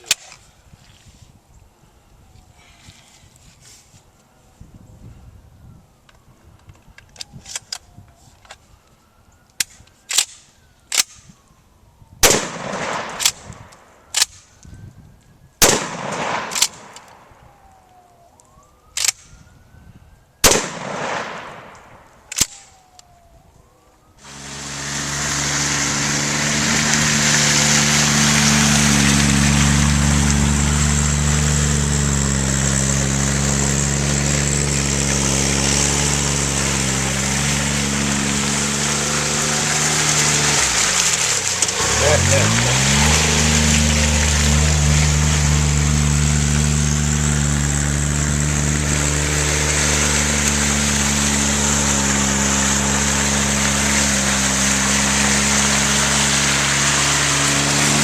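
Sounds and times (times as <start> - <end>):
gunshots with echoes: 12.2 - 13.5, 15.6 - 17.3, 20.4 - 22.0
engine running: 24.2 - 58.0.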